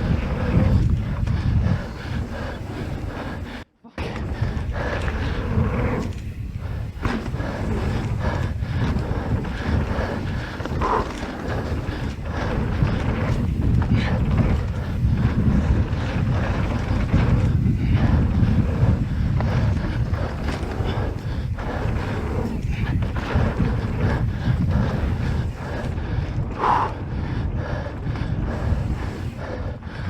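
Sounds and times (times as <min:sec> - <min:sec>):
bike clattering over bumps: 0:00.0 - 0:26.5
wind buffeting microphone: 0:00.0 - 0:30.0
tyres running over dirt: 0:04.2 - 0:26.5.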